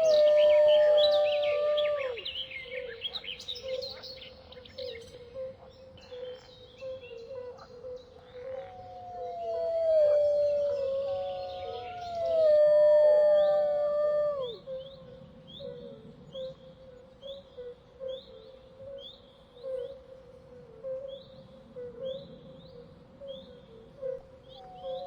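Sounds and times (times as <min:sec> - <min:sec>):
wolf howling: 0:00.0 - 0:02.4, 0:08.8 - 0:14.7.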